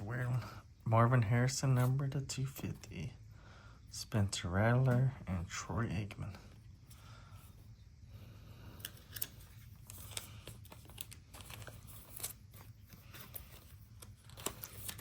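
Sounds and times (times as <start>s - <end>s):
low steady hum: 0.0s - 15.0s
cards flipping and rustling: 8.8s - 15.0s.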